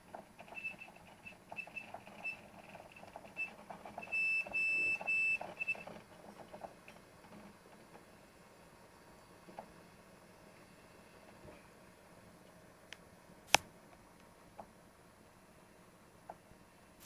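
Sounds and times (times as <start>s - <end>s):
hard drive squealing: 0.5s - 5.9s.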